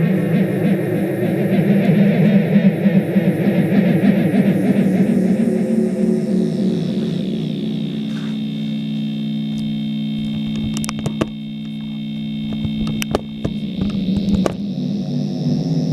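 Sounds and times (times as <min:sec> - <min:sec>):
steady low hum: 0:00.0 - 0:15.9
thin high whine: 0:00.0 - 0:15.9
sharp clicks: 0:09.5 - 0:14.6.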